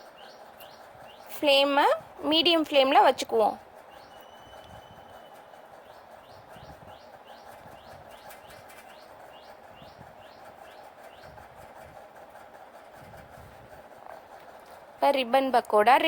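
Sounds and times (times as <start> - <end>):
bird chirping rising notes: 3.9 - 11.4.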